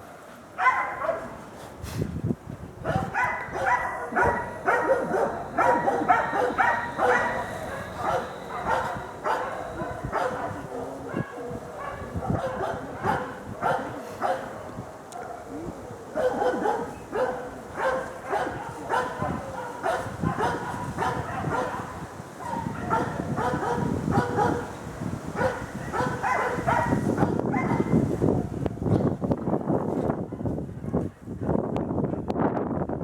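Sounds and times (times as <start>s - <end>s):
dog barking: 0.6s - 1.4s, 2.8s - 24.8s, 25.4s - 28.0s.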